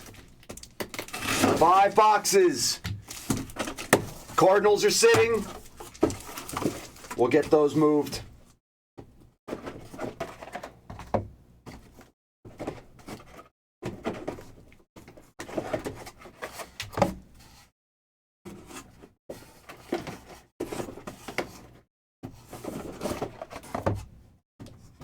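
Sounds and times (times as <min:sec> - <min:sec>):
cardboard boxes sliding and rustling: 0:01.1 - 0:01.6.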